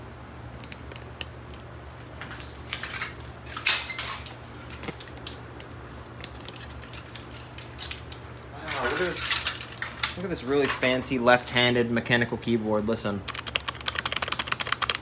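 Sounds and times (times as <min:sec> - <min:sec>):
mechanical keyboard clattering: 0:13.3 - 0:15.0.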